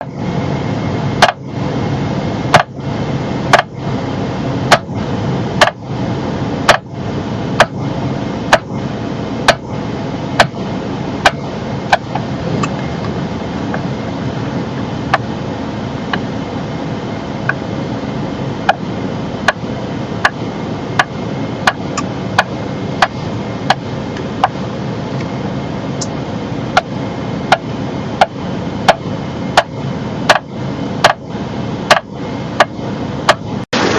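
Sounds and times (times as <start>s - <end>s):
car engine hum: 0.0s - 33.9s
steering column clicking: 10.4s - 10.6s, 11.2s - 13.9s, 31.9s - 32.7s.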